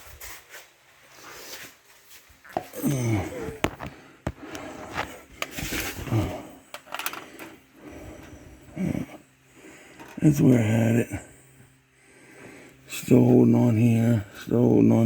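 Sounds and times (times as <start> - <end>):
man grunting: 2.7 - 3.6.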